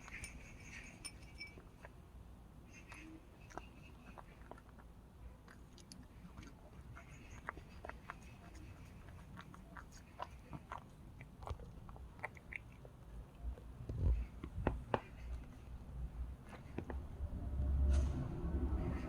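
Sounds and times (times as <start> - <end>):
cat crunching dry kibble: 2.8 - 15.6.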